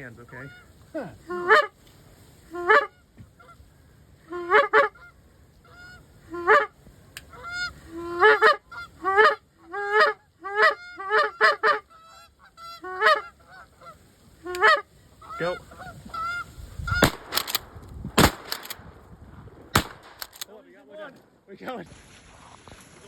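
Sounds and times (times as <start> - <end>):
goose honking: 0.2 - 1.8, 2.5 - 3.6, 4.2 - 17.0.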